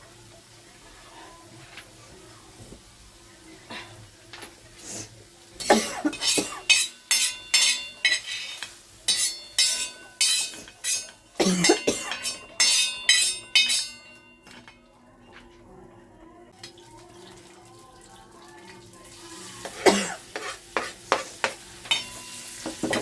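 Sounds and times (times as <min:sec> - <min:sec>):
metal utensils clinking: 0:04.3 - 0:04.8, 0:05.6 - 0:14.9, 0:19.6 - 0:23.0.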